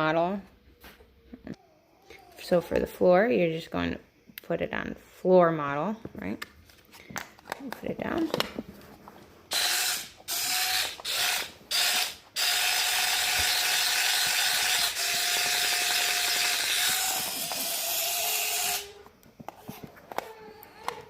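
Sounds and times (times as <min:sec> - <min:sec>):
toy car motors whirring: 0:09.5 - 0:21.0.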